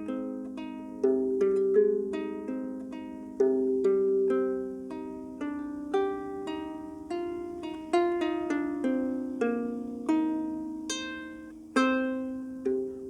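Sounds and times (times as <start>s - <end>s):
harp plucked notes: 0.0s - 13.0s.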